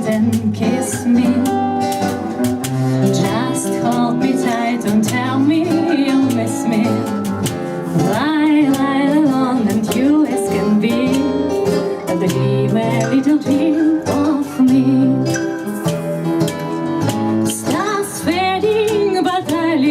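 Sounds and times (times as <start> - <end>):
strummed acoustic guitar: 0.0 - 19.9
person singing with vibrato: 8.0 - 16.5.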